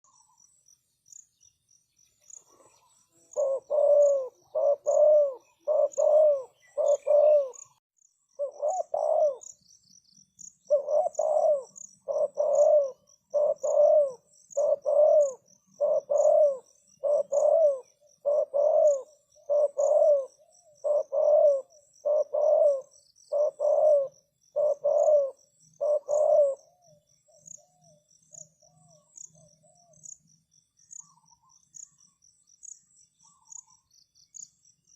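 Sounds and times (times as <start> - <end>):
dove cooing: 2.4 - 7.8, 8.4 - 9.6, 10.7 - 28.0.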